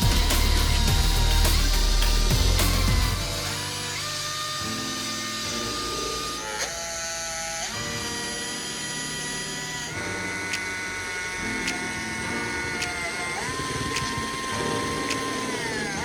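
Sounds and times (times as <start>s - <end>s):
power tool motor whining: 0.0s - 16.0s
sharp clicks: 9.4s - 16.0s.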